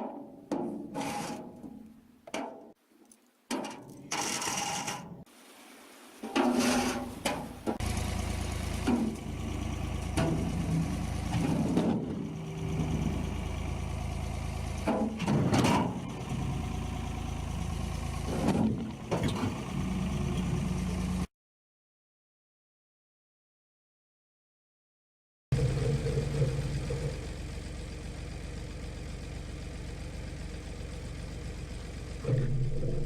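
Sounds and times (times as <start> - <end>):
tractor engine idling: 6.6 - 21.3, 25.6 - 33.0.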